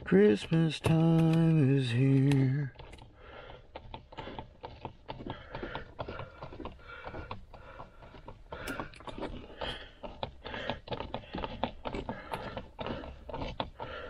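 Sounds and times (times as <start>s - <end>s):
hard plastic clicks and scrapes: 0.3s - 4.9s.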